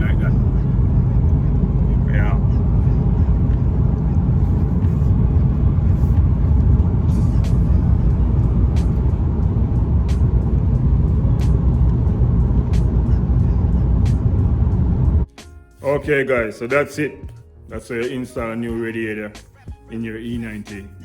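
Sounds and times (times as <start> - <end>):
car engine and road rumble: 0.0 - 15.3.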